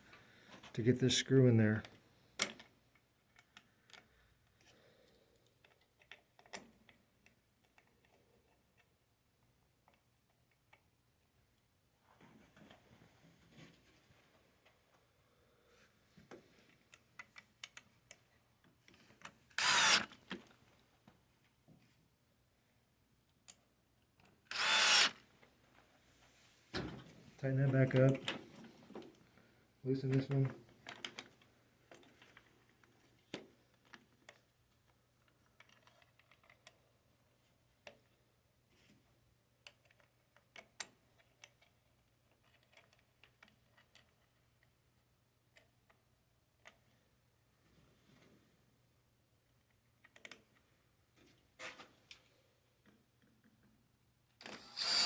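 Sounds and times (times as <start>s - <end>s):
screw gun driving screw: 19.6s - 20.2s, 24.5s - 25.2s, 54.4s - 55.0s
small parts clicking: 39.6s - 44.4s, 54.4s - 55.0s.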